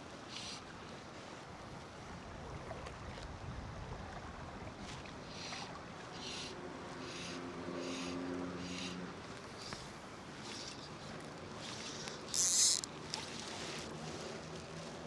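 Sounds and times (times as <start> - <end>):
wind: 0.0 - 15.0.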